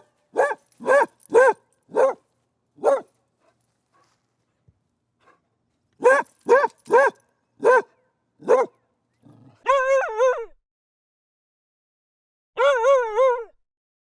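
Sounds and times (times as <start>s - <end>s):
dog barking: 0.0s - 2.2s, 2.8s - 3.1s, 6.0s - 8.8s.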